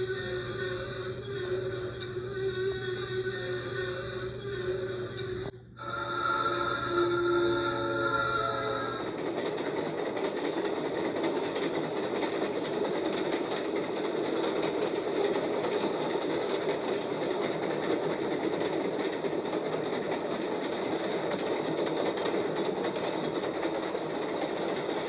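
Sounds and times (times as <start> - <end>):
train wheels clanking over rails: 8.2 - 25.0.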